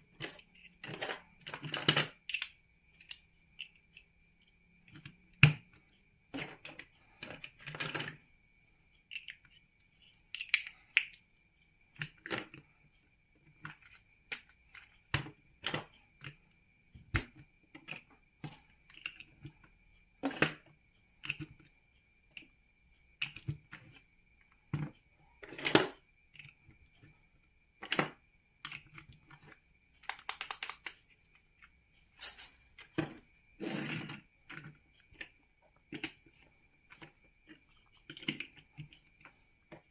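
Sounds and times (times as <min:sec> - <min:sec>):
plastic bricks snapping together: 0:30.0 - 0:31.0.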